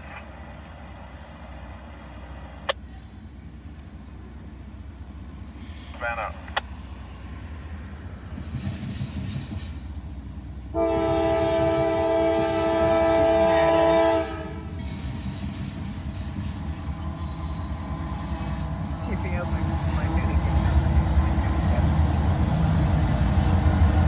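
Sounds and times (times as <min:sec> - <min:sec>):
passing train rumble: 0:00.0 - 0:24.0
locomotive horn blast: 0:10.7 - 0:14.8.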